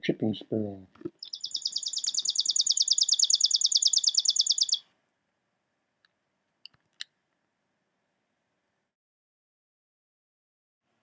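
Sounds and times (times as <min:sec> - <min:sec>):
bird dry trill: 0:01.1 - 0:04.8.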